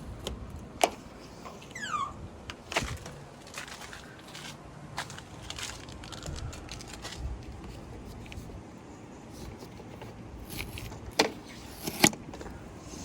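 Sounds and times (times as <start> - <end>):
short falling squeak: 1.6 - 2.2.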